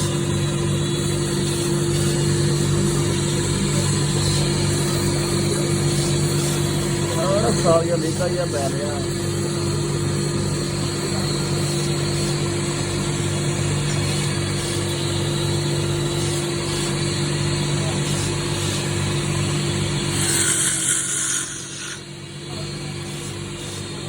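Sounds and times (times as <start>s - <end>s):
lathe motor humming: 0.0s - 24.0s
cutting tool scraping wood: 13.8s - 22.1s.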